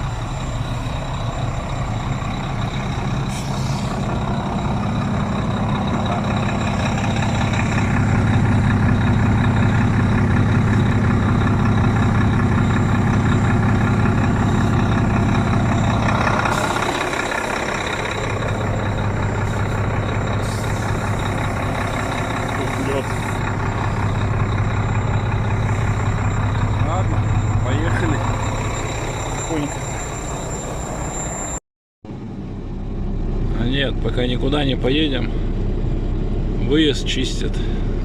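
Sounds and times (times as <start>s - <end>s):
diesel truck engine idling: 0.0s - 31.4s, 32.1s - 38.0s
short air hisses: 3.3s - 4.0s, 20.4s - 20.9s.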